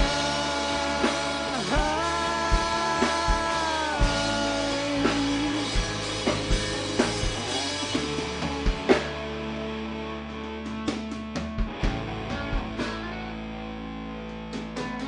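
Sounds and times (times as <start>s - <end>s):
bass guitar: 0.0s - 15.0s
drum kit: 0.0s - 15.0s
electric guitar: 0.0s - 15.0s.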